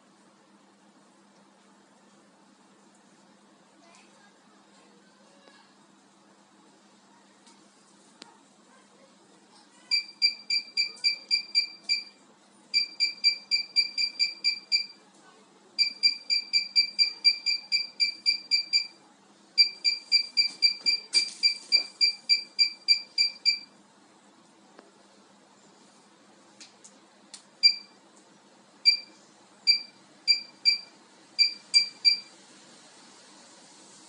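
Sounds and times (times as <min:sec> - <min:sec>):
short high beeps: 0:09.9 - 0:12.1, 0:12.8 - 0:15.0, 0:15.8 - 0:19.0, 0:19.6 - 0:23.7, 0:27.6 - 0:28.0, 0:28.9 - 0:32.3.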